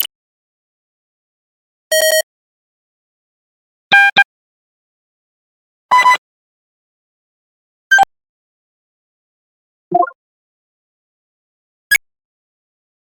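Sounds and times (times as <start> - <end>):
short electronic beeps: 9.9 - 10.2.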